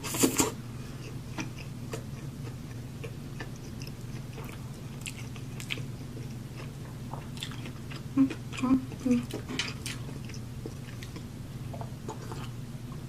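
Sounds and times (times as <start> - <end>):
steady low hum: 0.0 - 13.0
person chewing food: 0.1 - 12.6.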